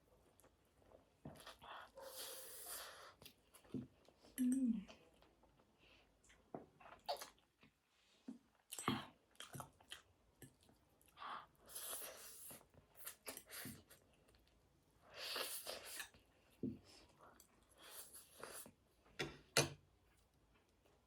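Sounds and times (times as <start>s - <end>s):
chewing with wet mouth clicks: 8.6s - 11.2s.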